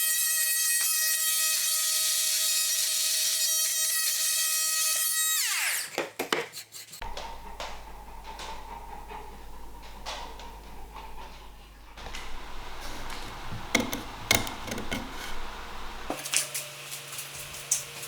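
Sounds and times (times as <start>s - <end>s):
low steady hum: 7.0s - 16.1s
power tool whining: 7.0s - 16.2s
sharp clicks and knocks: 7.0s - 16.2s.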